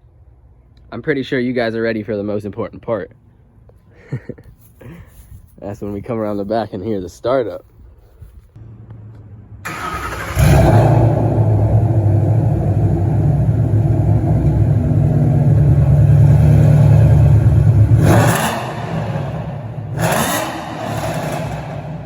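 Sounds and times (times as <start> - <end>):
engine idling with deep rumble: 9.7 - 18.1.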